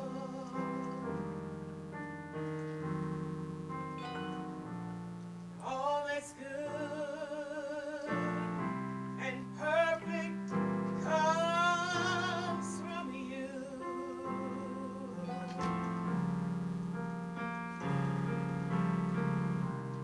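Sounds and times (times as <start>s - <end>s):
woman singing gospel: 0.0s - 1.2s, 5.6s - 8.6s, 9.2s - 15.7s
keyboard chords: 0.0s - 5.9s, 8.1s - 20.0s.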